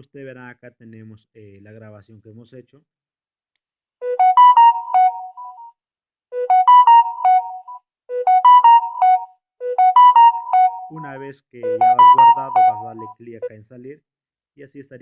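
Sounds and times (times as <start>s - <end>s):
phone ringtone melody: 4.0s - 5.7s, 6.4s - 13.2s.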